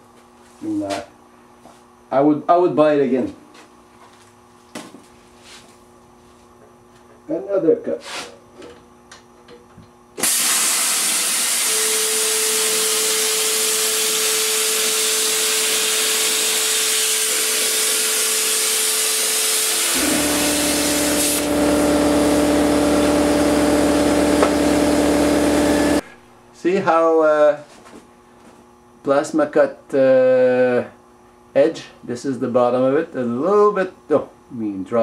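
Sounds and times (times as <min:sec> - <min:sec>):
plasma cutter hissing: 0:10.2 - 0:21.9
thin steady whine: 0:20.0 - 0:27.6.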